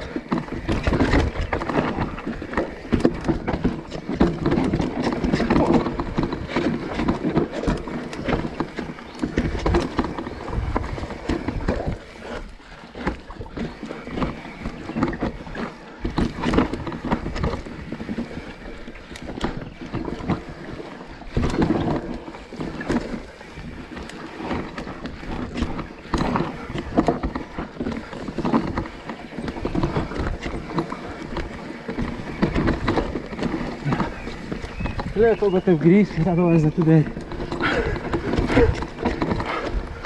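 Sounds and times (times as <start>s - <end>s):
bike clattering over rock: 0.0s - 20.6s, 21.2s - 40.0s
wind buffeting microphone: 23.4s - 40.0s.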